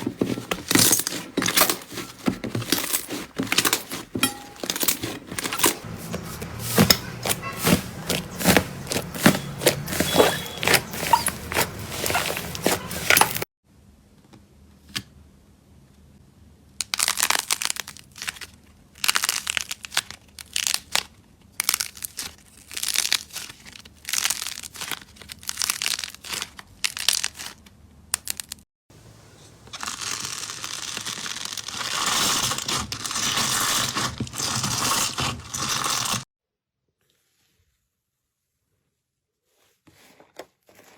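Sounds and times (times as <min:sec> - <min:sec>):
slime crackling and popping: 0:16.8 - 0:27.6.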